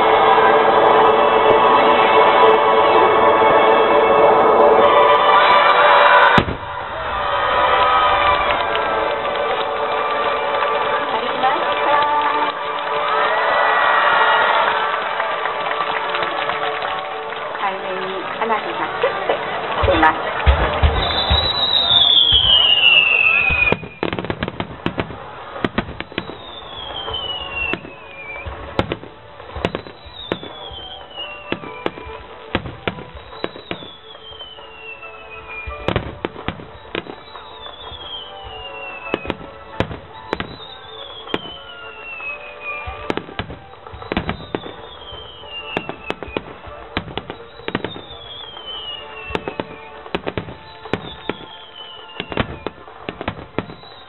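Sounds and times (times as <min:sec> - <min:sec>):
falling firework whistle: 0:00.0 - 0:11.0, 0:19.9 - 0:54.0
firework bangs and crackling: 0:00.0 - 0:54.0.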